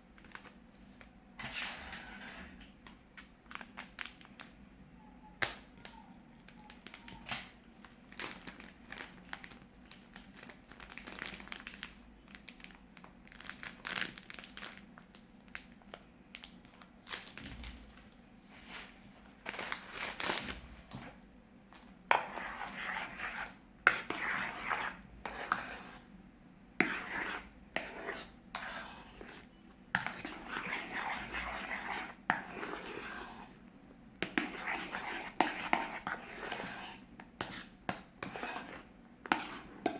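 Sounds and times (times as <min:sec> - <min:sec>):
plastic bags crinkling: 0:03.4 - 0:04.5, 0:06.4 - 0:21.0.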